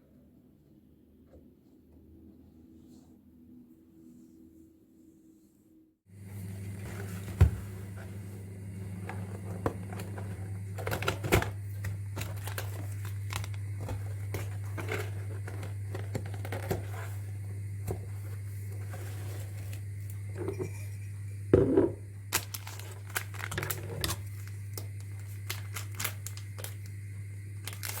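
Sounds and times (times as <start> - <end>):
steady low hum: 6.1 - 28.0
packaging crinkling: 9.8 - 17.1, 22.3 - 26.9, 27.6 - 28.0.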